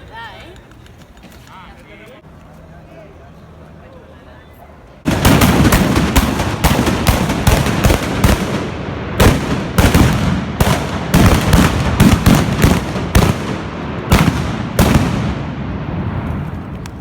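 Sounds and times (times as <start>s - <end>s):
gunshots with echo: 5.1s - 16.1s.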